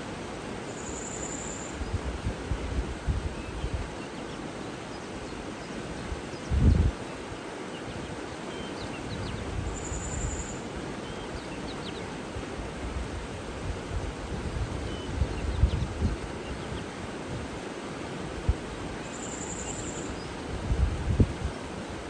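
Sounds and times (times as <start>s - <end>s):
rushing water: 0.0s - 22.0s
wind buffeting microphone: 1.8s - 3.9s, 6.1s - 7.1s, 12.4s - 17.6s, 20.5s - 21.7s
small birds chirping: 19.0s - 20.4s.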